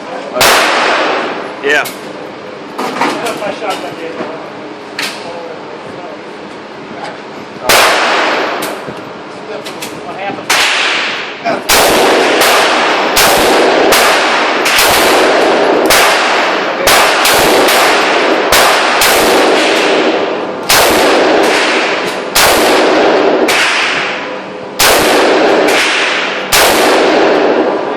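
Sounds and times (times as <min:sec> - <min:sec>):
echoing gunshots: 0:00.4 - 0:01.5, 0:07.6 - 0:08.9, 0:10.5 - 0:27.9.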